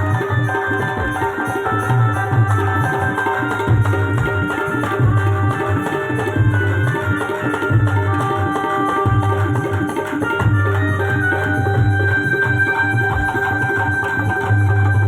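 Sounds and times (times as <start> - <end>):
driving drum rhythm: 0.0 - 15.0
held melody notes: 0.0 - 15.0
pulsing bass: 10.4 - 15.0.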